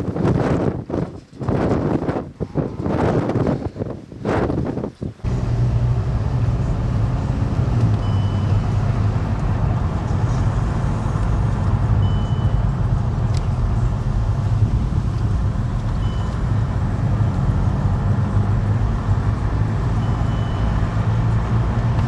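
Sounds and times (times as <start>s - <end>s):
car engine droning: 5.2s - 22.0s
short high beeps: 8.0s - 8.6s, 12.0s - 12.7s, 16.0s - 16.4s, 20.0s - 20.9s.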